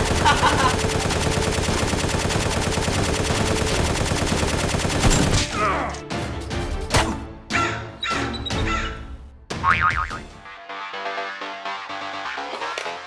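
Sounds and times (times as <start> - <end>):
rapid automatic gunfire: 0.0 - 5.4.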